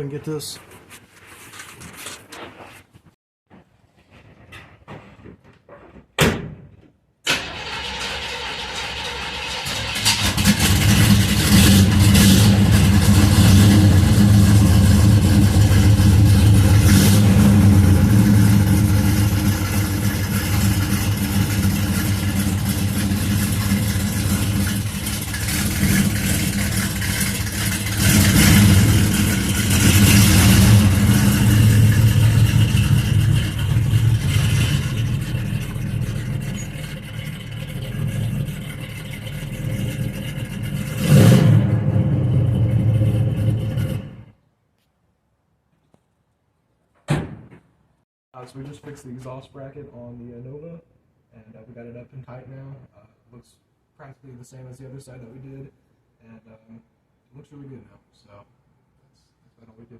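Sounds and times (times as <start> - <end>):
car engine running: 10.0 - 44.2.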